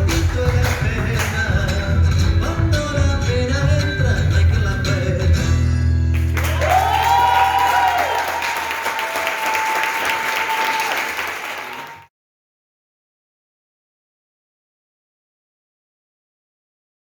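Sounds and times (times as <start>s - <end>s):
audience applauding: 0.0s - 1.7s, 6.2s - 12.1s
crowd cheer or whistle: 6.4s - 12.1s.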